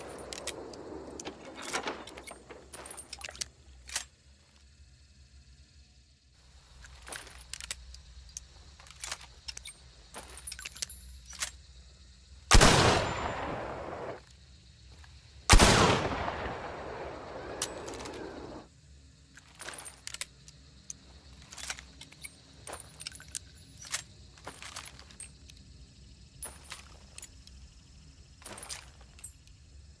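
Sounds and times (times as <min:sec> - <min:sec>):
small clicks: 0:00.0 - 0:04.2, 0:06.8 - 0:11.6, 0:17.2 - 0:18.6, 0:19.3 - 0:25.7
rifle shots with echo: 0:12.5 - 0:14.2, 0:15.5 - 0:18.6.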